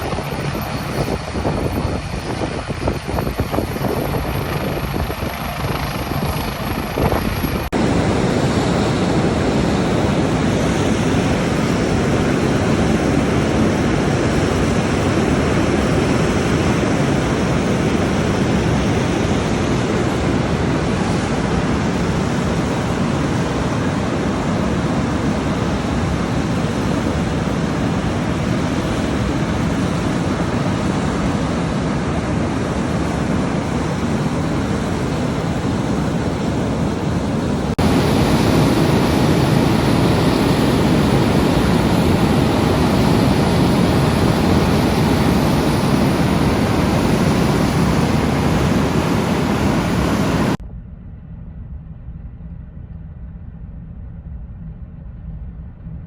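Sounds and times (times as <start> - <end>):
helicopter engine and rotor: 0.0 - 50.6.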